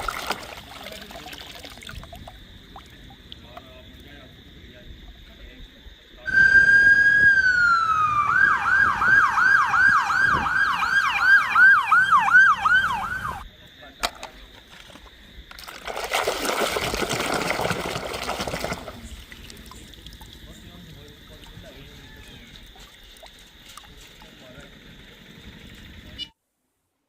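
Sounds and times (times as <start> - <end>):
electronic toy siren wail: 6.3 - 13.4.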